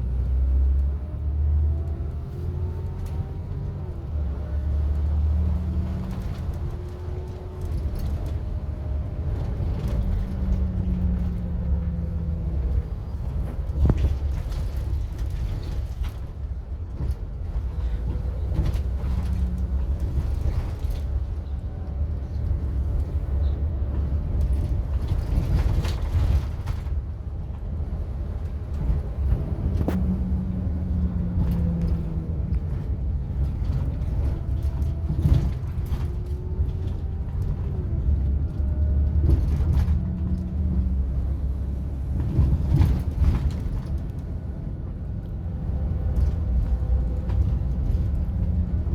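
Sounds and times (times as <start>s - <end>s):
engine and road rumble: 0.0s - 48.9s.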